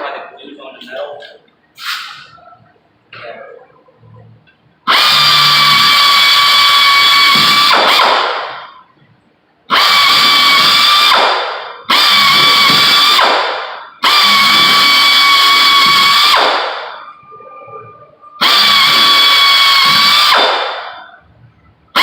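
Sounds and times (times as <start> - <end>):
power drill whining: 4.9 - 8.0, 9.7 - 11.2, 11.9 - 13.2, 14.0 - 16.4, 18.4 - 20.4.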